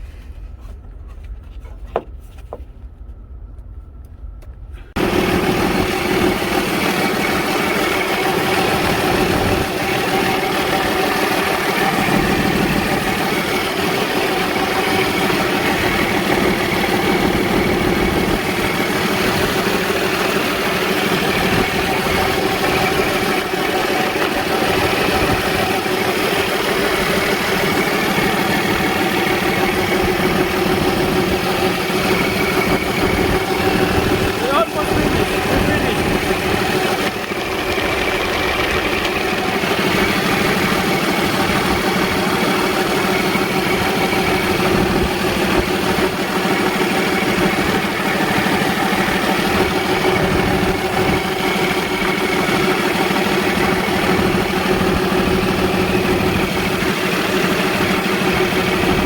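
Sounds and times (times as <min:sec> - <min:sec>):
diesel truck engine idling: 0:00.0 - 0:59.0.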